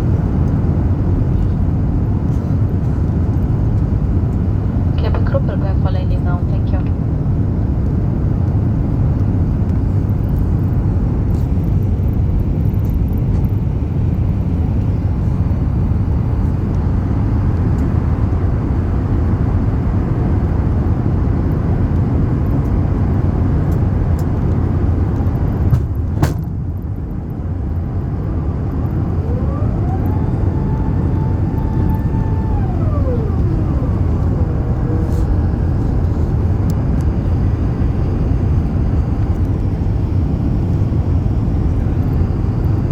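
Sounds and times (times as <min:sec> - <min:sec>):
airliner low rumble: 0:00.0 - 0:42.9
thin whine: 0:27.9 - 0:39.5.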